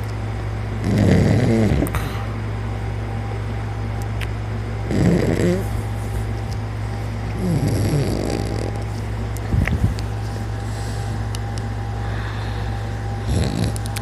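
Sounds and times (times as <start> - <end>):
steady low hum: 0.0 - 14.0
man snoring: 0.8 - 2.2, 4.8 - 5.7, 7.4 - 8.8, 13.2 - 13.9.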